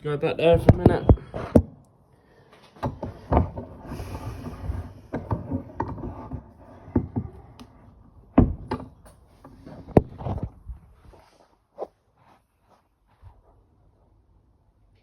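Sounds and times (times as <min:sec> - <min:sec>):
objects knocking and clicking: 0:02.7 - 0:10.6.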